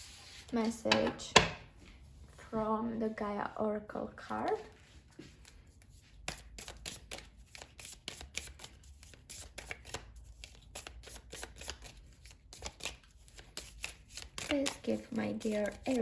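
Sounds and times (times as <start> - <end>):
cards being shuffled: 4.5 - 16.0.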